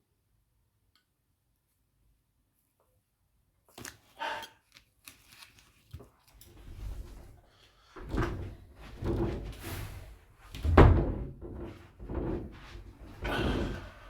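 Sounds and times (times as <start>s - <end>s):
door shutting with heavy thud: 10.6s - 11.4s.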